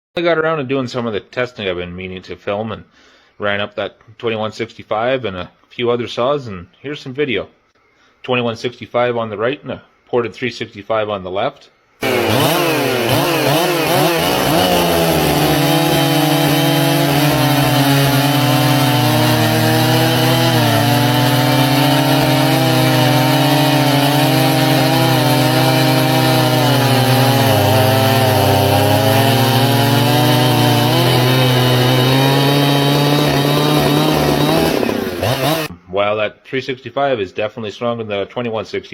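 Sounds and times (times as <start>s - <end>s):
chainsaws cutting wood: 12.0s - 35.7s.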